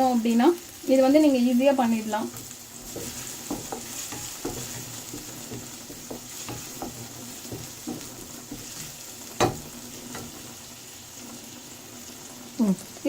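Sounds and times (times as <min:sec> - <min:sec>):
onions sizzling in oil: 0:00.0 - 0:13.0
spatula scraping pan: 0:02.2 - 0:11.4
spatula knocking on pan: 0:02.3 - 0:10.4.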